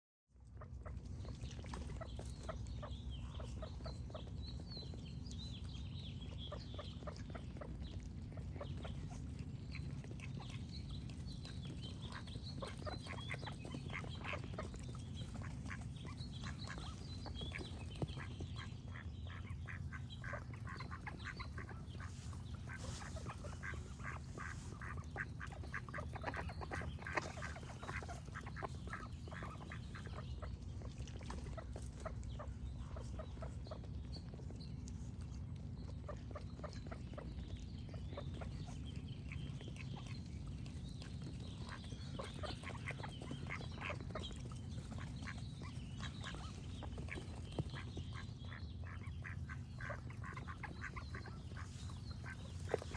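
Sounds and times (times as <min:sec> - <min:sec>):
steady low hum: 0:00.3 - 0:52.9
small birds chirping: 0:00.4 - 0:52.9
ducks quacking: 0:08.3 - 0:33.9, 0:41.2 - 0:52.9.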